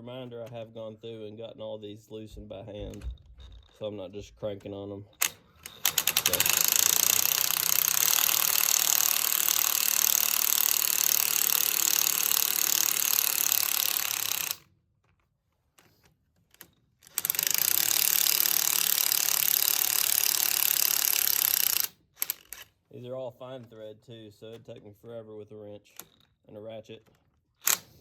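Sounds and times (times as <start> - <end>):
power tool rapid mechanical rattle: 5.2 - 14.7, 17.0 - 22.8, 27.6 - 28.0.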